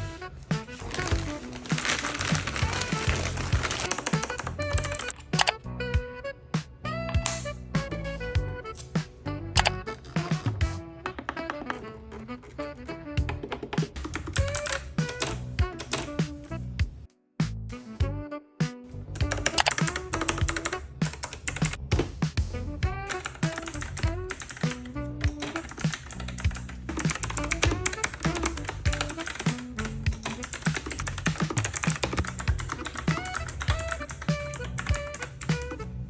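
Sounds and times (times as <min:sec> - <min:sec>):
background music: 0:00.0 - 0:36.0
mechanical keyboard typing: 0:00.9 - 0:05.6, 0:09.6 - 0:16.3, 0:19.2 - 0:21.8, 0:23.1 - 0:35.8.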